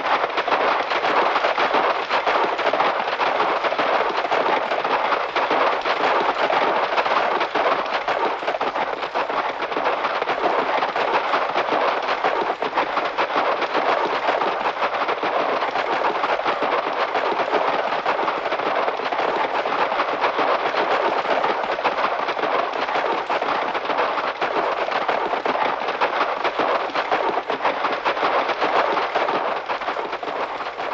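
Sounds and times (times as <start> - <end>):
horses galloping hoofbeats: 0.0 - 30.9.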